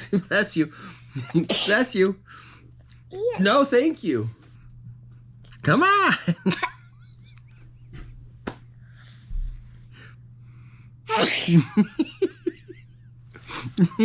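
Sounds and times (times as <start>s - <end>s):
child sneezing: 1.3s - 1.9s, 11.1s - 11.7s.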